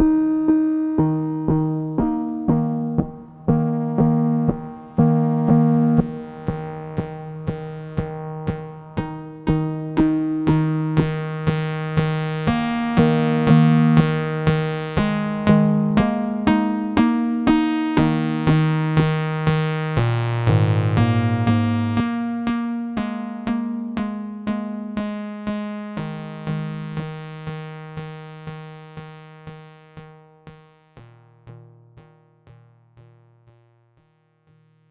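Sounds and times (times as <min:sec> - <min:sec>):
synthesizer plucked notes: 0:00.0 - 0:25.2.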